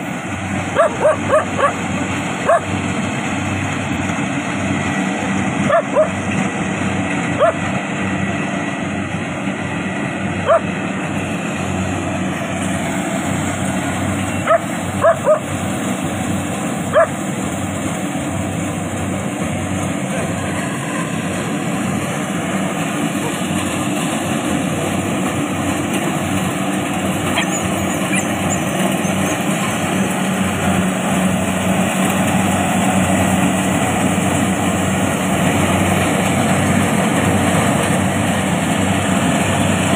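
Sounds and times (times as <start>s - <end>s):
combine harvester engine running: 0.0s - 39.9s
dog yipping: 0.8s - 1.8s, 2.4s - 2.7s, 5.7s - 6.2s, 7.4s - 7.6s, 10.4s - 10.7s, 14.4s - 15.5s, 16.9s - 17.1s, 27.3s - 29.8s.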